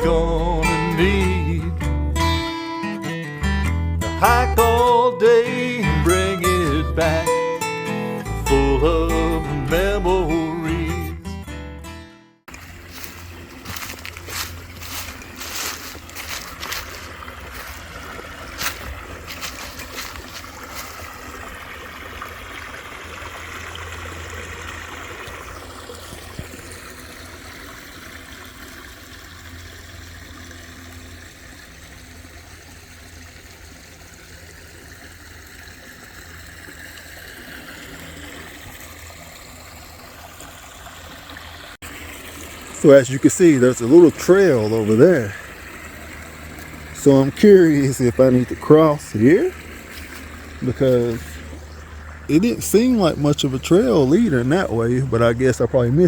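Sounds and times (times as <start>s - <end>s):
creek flowing water: 12.5s - 56.0s.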